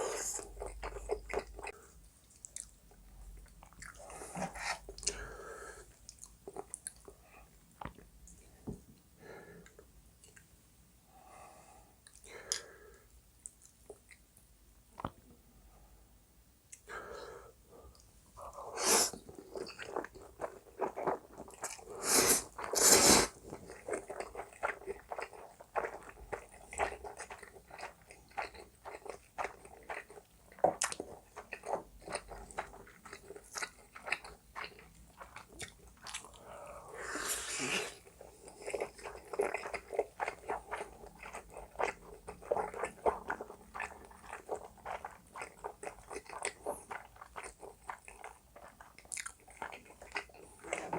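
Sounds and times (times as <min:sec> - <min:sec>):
noodles being chewed wetly: 0:00.2 - 0:05.2, 0:19.3 - 0:36.5, 0:37.8 - 0:50.9.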